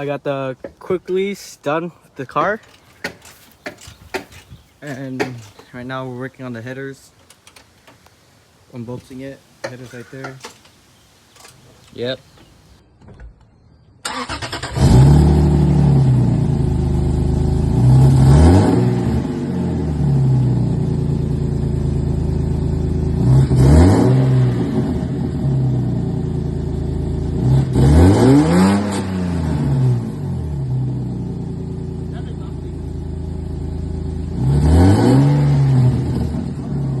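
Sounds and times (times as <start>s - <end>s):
car engine cranking and revving: 14.0s - 37.0s.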